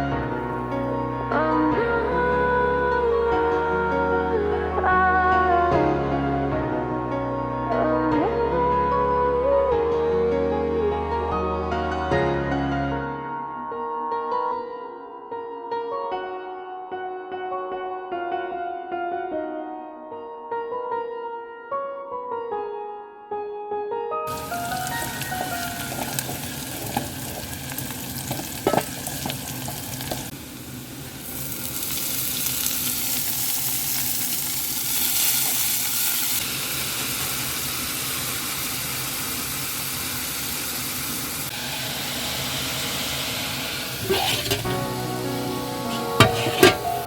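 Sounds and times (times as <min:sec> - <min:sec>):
food sizzling in a pan: 0:24.3 - 0:47.0
utensil knocking on pan: 0:28.6 - 0:29.0, 0:45.9 - 0:47.0.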